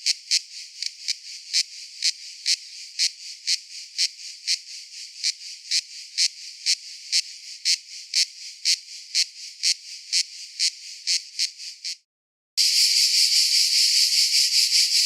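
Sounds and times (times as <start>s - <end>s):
cicada buzzy pulses: 12.6s - 15.0s.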